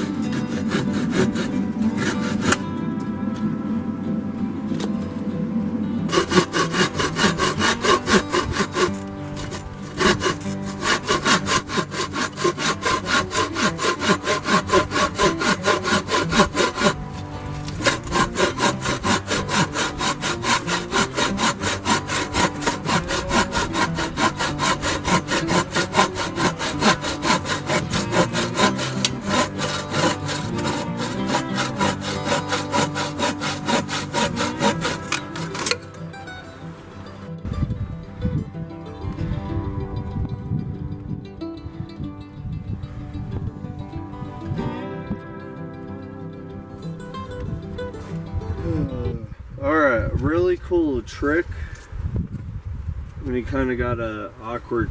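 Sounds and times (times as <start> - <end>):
hand saw cutting wood: 0.0 - 2.7, 6.1 - 36.0.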